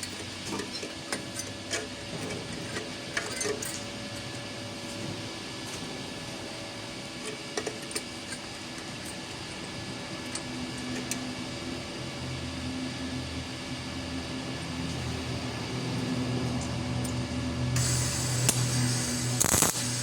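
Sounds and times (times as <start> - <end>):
machine hum: 11.4 - 20.0.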